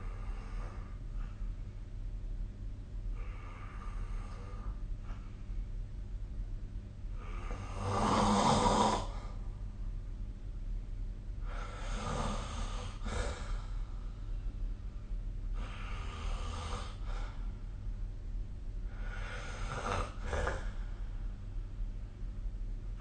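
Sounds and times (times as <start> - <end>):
steady low hum: 0.0 - 23.0
person snoring: 7.2 - 9.4, 11.4 - 13.7, 15.6 - 17.4, 18.9 - 20.9.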